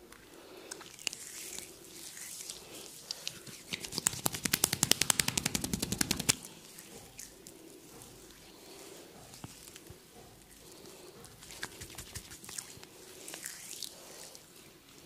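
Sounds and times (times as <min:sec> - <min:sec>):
rapid sharp cracks: 0:03.8 - 0:06.4.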